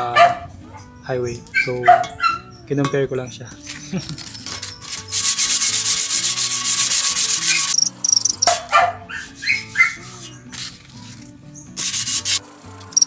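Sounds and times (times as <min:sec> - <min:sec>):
scratchy sanding rasp: 0:04.2 - 0:07.8, 0:09.1 - 0:12.4.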